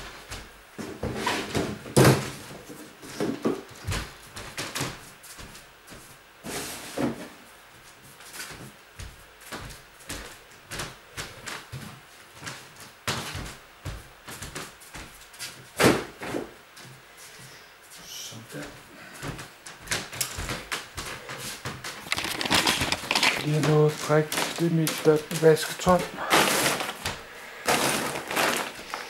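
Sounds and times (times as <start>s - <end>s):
boxes knocking and clattering: 0.8s - 4.8s, 21.3s - 29.0s.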